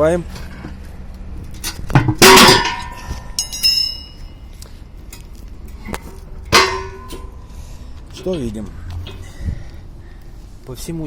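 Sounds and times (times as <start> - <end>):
metal manhole cover clanking: 1.4 - 4.4, 5.8 - 9.4
high metallic ring: 2.4 - 4.5, 6.5 - 7.4.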